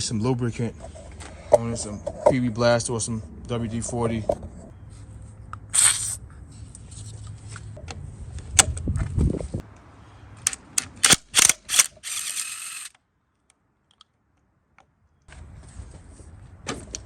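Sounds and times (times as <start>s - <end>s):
short hiss: 5.7s - 6.2s
ratchet wrench clicking: 10.5s - 12.9s.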